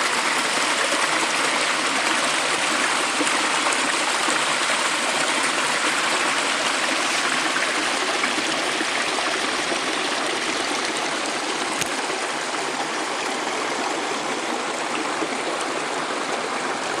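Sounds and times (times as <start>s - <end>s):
stream flowing over rocks: 0.0s - 17.0s.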